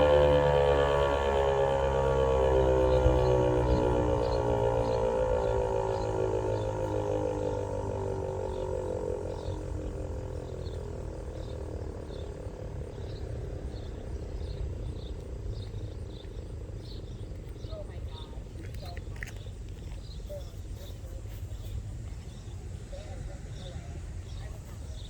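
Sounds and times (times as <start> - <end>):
siren winding down: 0.0 - 12.1.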